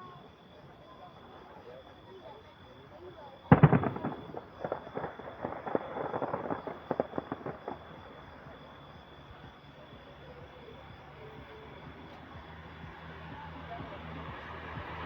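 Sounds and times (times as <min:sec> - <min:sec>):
low background murmur: 0:00.0 - 0:15.0
fireworks crackling: 0:03.0 - 0:15.0.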